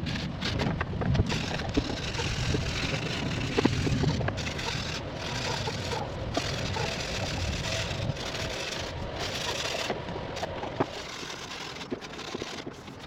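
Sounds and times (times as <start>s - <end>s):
sanding gritty scraping: 0.0s - 13.0s.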